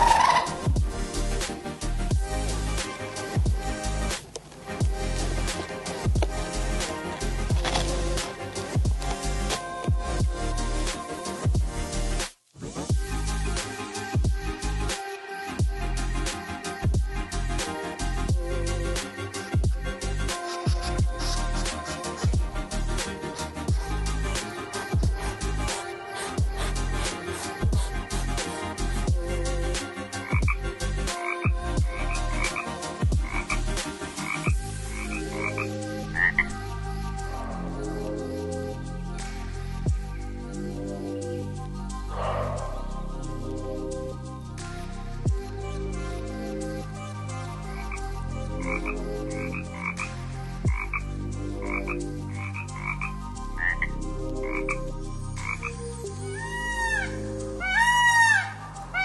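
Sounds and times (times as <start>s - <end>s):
fowl calling: 0.0s - 0.7s, 42.1s - 42.8s, 56.3s - 59.0s
frogs croaking: 0.0s - 0.8s, 29.7s - 36.6s, 42.1s - 42.9s, 47.7s - 59.0s
background music: 0.0s - 59.0s.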